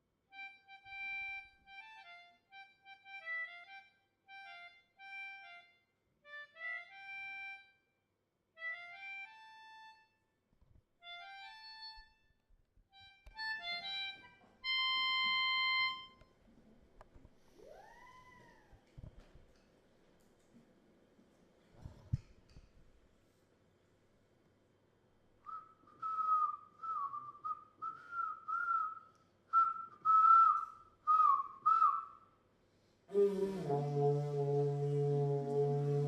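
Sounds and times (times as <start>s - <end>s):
harmonica playing a tune: 0.3s - 7.8s, 8.6s - 10.2s, 11.0s - 12.2s, 13.0s - 16.2s.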